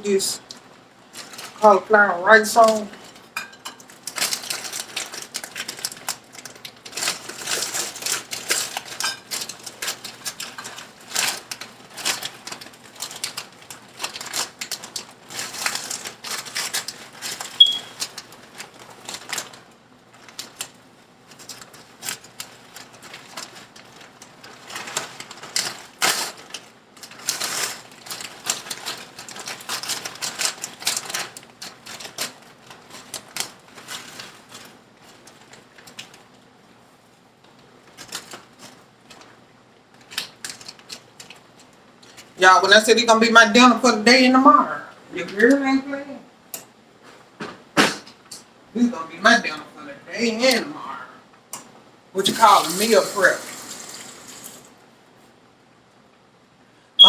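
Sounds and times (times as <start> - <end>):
short high beep: 17.6 - 18.0.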